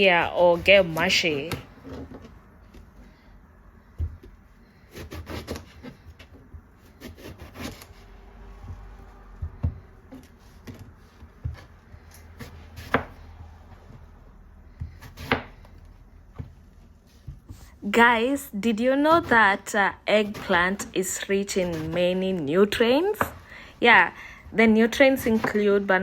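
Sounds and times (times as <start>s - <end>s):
knife chopping on cutting board: 4.9s - 8.0s, 8.6s - 13.3s, 14.7s - 15.8s, 20.2s - 22.2s.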